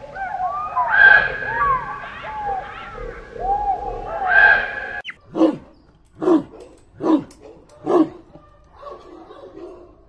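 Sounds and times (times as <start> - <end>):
warbling animal calls: 0.0 - 5.6.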